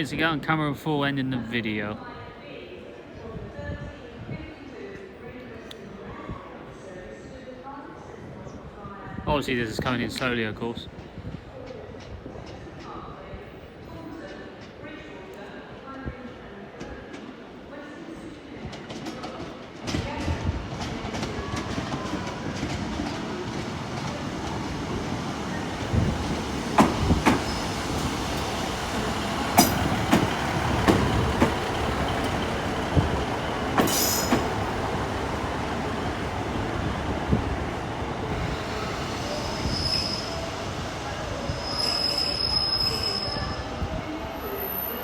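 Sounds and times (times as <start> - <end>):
train rolling rumble: 18.6 - 45.0
wheels clicking over rail joints: 18.9 - 35.1
sharp metallic clanks: 29.6 - 30.3.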